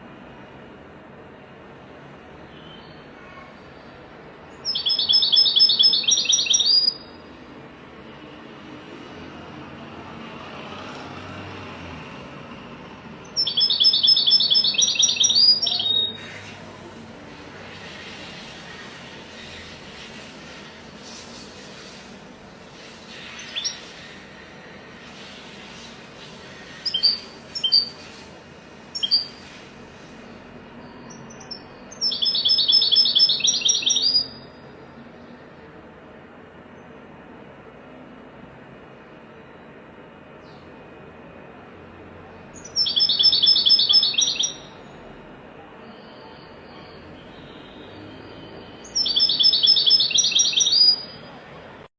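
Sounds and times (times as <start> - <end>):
bird singing high notes: 4.6 - 7.2, 13.3 - 16.2, 26.8 - 28.0, 29.0 - 29.4, 30.8 - 34.7, 42.6 - 44.8, 45.9 - 51.3.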